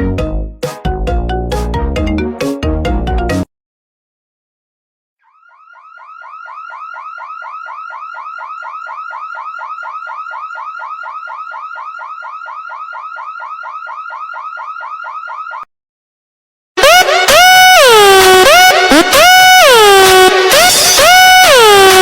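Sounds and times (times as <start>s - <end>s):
electronic alarm chirping: 5.4s - 15.6s.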